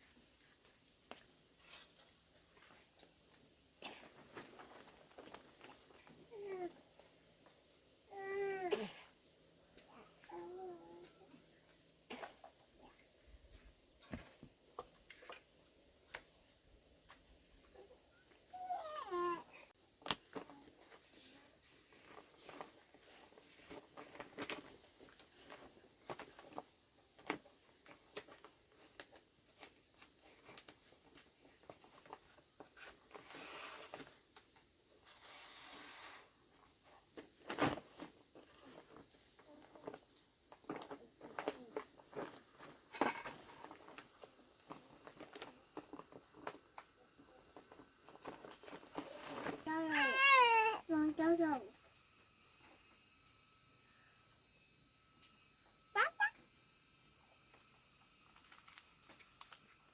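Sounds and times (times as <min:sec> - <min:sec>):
insect chirping: 0:00.0 - 0:59.9
insect buzzing: 0:48.9 - 0:59.9.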